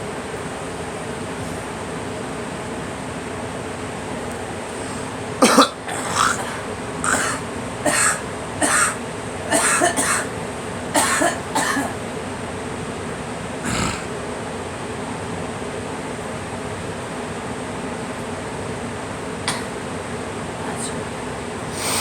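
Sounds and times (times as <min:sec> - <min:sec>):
person coughing: 0:04.9 - 0:10.4, 0:11.0 - 0:12.0, 0:13.7 - 0:14.1, 0:19.5 - 0:19.8, 0:21.8 - 0:22.0.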